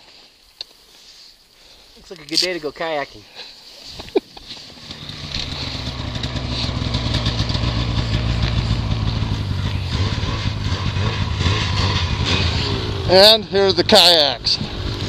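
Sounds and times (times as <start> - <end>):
vehicle engine running: 4.5 - 15.0.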